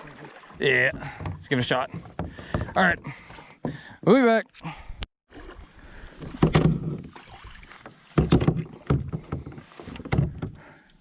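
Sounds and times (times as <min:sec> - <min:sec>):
kayak paddle splashing in water: 0:00.0 - 0:02.9, 0:05.3 - 0:10.6.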